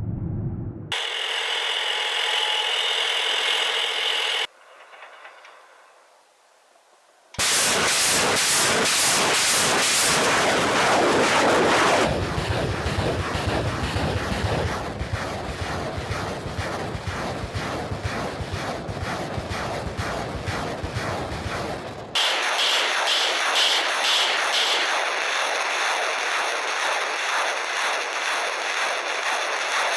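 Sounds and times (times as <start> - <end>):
rocket launcher firing salvo: 7.4 - 29.9.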